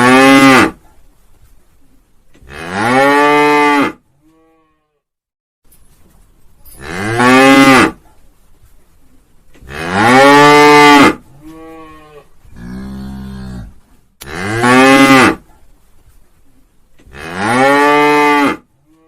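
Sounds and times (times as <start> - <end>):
cows mooing: 9.7 - 15.4.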